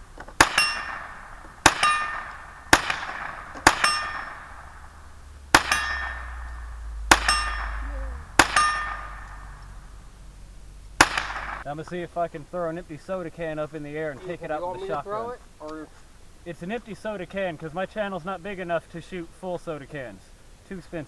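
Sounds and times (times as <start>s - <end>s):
metal being struck: 0.0s - 11.7s.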